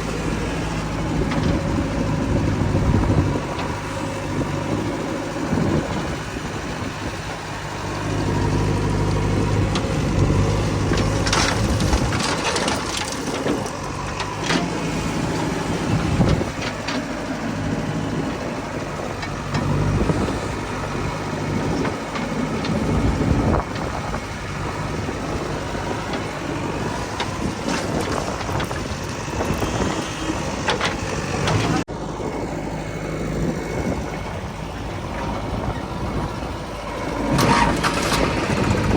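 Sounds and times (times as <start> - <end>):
heavy diesel engine running: 0.0 - 38.9
knocks and clatters: 9.6 - 14.9, 25.4 - 31.8.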